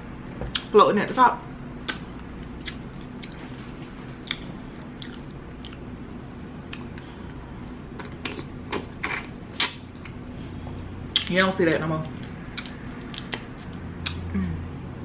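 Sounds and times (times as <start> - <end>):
wet chewing mouth clicks: 4.2 - 5.8, 12.1 - 14.3.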